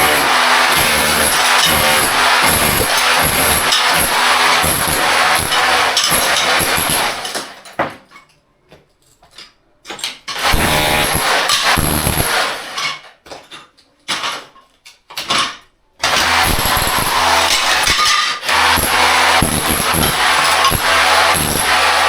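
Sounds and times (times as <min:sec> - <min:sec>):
power tool motor running: 0:00.0 - 0:07.2, 0:10.4 - 0:12.4, 0:16.1 - 0:22.0.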